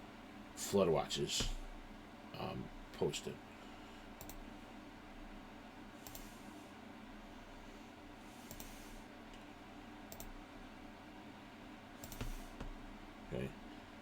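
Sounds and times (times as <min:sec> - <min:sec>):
low room hum: 0:00.0 - 0:14.0
computer mouse clicks: 0:04.2 - 0:04.4, 0:06.0 - 0:06.3, 0:08.4 - 0:09.4, 0:10.1 - 0:10.4, 0:12.0 - 0:12.8.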